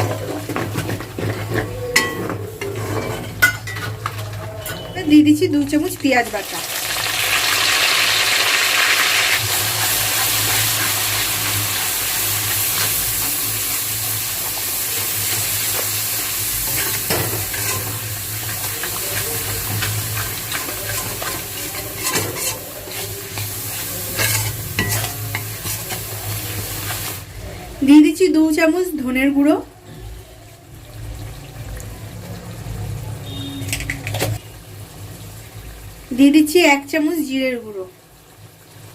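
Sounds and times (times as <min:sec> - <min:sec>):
paste sizzling in hot oil: 0:05.7 - 0:27.4.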